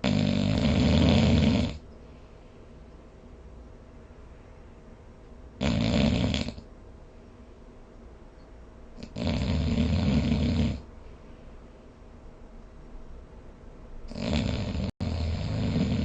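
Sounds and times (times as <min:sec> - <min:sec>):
person snoring: 0:00.0 - 0:01.8, 0:05.6 - 0:06.6, 0:09.0 - 0:10.8, 0:14.1 - 0:16.0.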